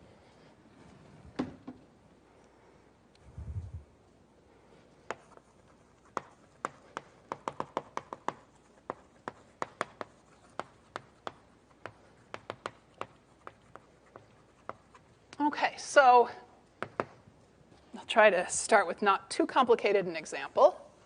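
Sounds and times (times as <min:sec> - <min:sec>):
chalk tapping on a board: 0:05.1 - 0:15.0, 0:16.8 - 0:17.2.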